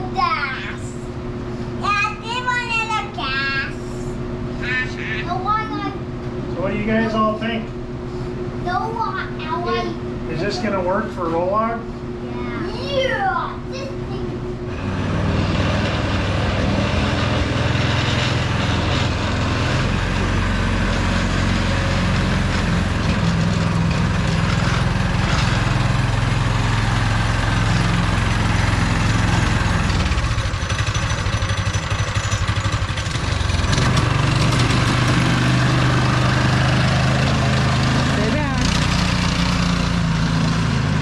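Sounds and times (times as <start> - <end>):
small gasoline engine running: 14.7 - 41.0.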